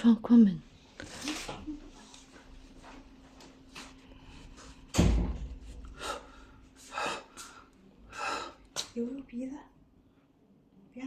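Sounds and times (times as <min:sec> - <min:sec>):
door shutting with heavy thud: 0:04.9 - 0:05.8
soft breathy sounds: 0:05.8 - 0:08.8.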